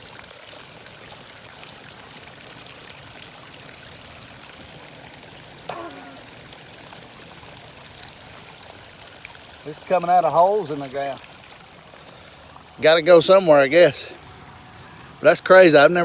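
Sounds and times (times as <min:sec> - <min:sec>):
short pitched sound: 0:05.7 - 0:06.4
water rushing out of ground: 0:09.4 - 0:16.0.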